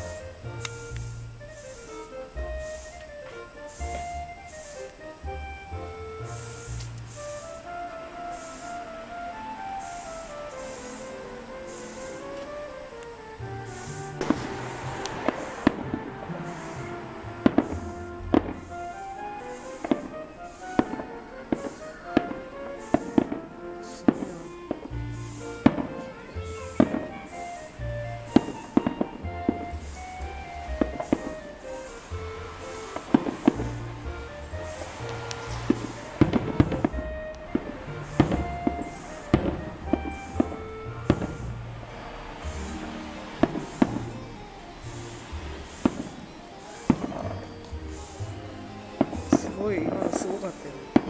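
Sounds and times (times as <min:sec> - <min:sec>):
fireworks bursting: 0:00.0 - 0:51.0
melodic music: 0:00.0 - 0:51.0.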